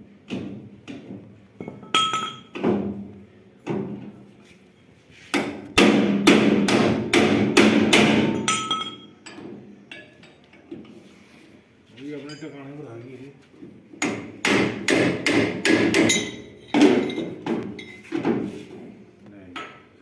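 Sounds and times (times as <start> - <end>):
hammer striking steel: 5.4 - 9.1, 14.0 - 17.3.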